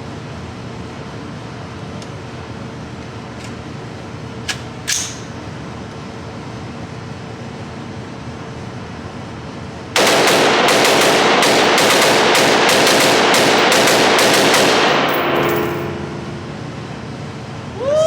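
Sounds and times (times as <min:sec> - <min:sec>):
rifle firing rapid shots: 0:10.0 - 0:16.0.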